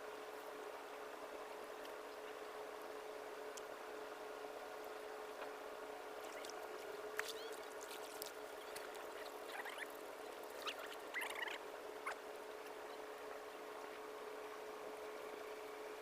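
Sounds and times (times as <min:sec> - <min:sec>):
water splashing and trickling: 0:06.1 - 0:11.2.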